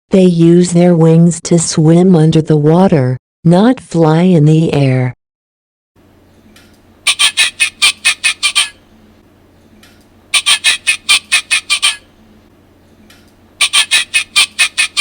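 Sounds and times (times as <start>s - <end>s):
recorded penguin squawking: 7.0s - 8.9s, 10.3s - 12.2s, 13.6s - 15.0s.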